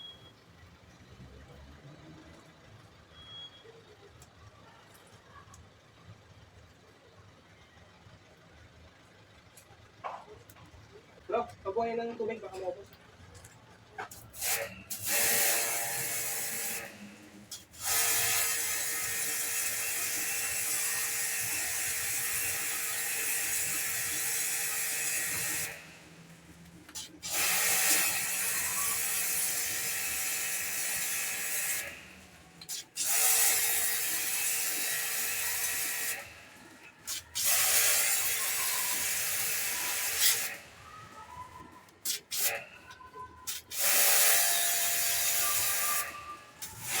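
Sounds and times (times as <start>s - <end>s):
pressure washer pump humming: 14.3s - 40.9s, 43.5s - 47.0s.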